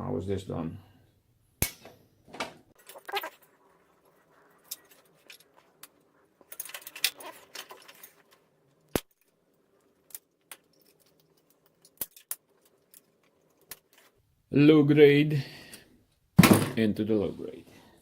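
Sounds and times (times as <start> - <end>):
clicks and rattles of parts handled: 4.6 - 14.2.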